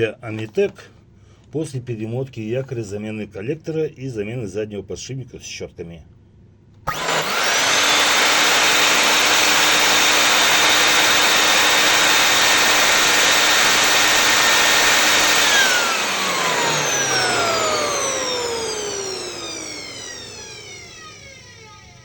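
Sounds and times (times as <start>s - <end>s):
vacuum cleaner motor whine: 6.9s - 22.0s.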